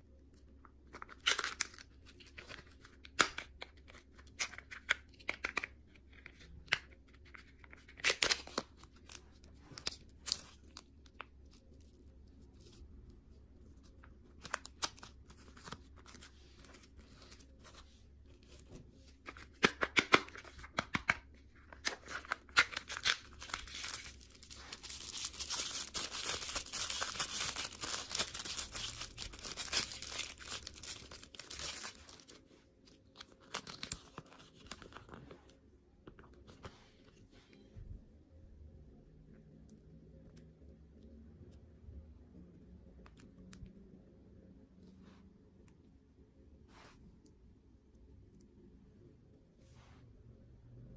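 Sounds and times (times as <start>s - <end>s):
plastic packaging crinkling: 21.7s - 35.3s
plastic packaging tearing: 21.8s - 32.4s, 33.2s - 34.8s.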